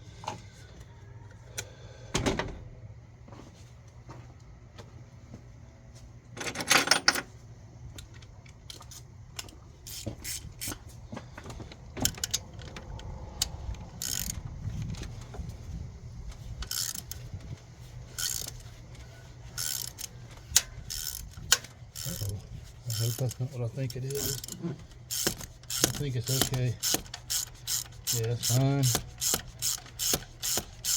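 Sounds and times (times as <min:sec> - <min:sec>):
metal tools clinking and rattling: 0:06.4 - 0:07.3, 0:19.6 - 0:30.9.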